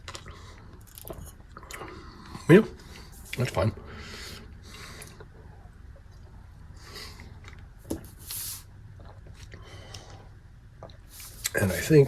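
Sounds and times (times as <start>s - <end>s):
person chewing food: 0.0s - 3.6s, 4.2s - 11.6s
short hiss: 8.2s - 8.6s.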